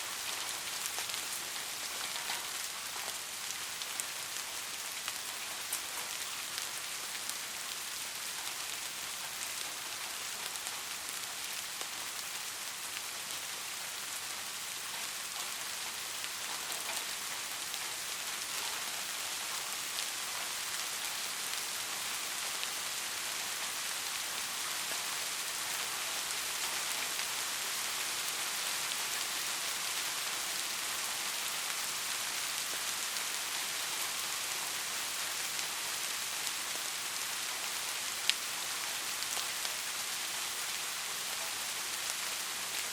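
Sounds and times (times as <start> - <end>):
steady rain falling: 0.0 - 42.9.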